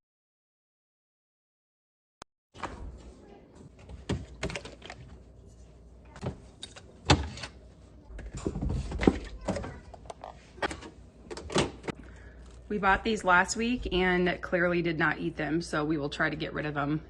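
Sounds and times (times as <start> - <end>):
groceries and containers clattering: 3.6 - 5.3, 6.1 - 12.7.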